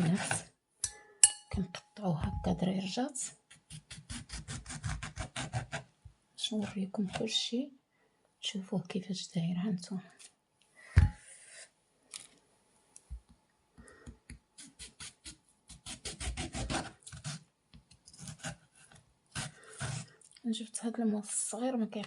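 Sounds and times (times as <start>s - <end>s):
knife sawing through food: 3.7s - 5.8s, 14.6s - 17.4s, 19.3s - 20.1s.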